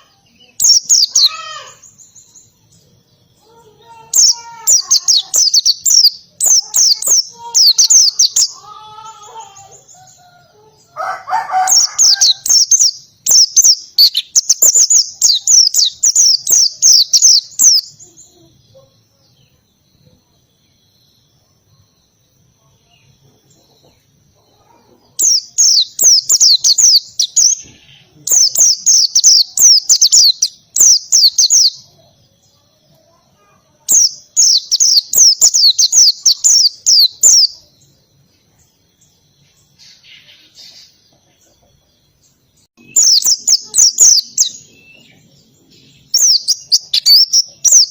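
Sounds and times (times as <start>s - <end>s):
harsh bird call: 0.0s - 2.1s, 3.4s - 17.8s
bird singing high trills: 0.0s - 18.8s, 24.5s - 38.0s, 42.7s - 47.9s.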